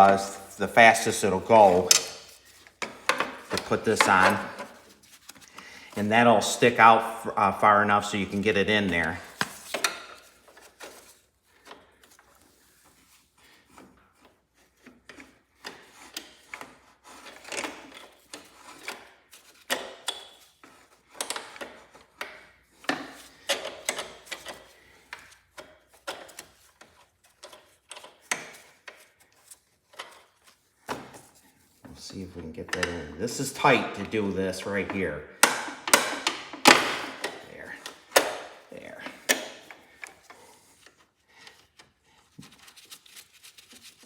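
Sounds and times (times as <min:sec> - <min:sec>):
clicks and scrapes of metal parts: 0:00.0 - 0:06.0, 0:32.0 - 0:41.9.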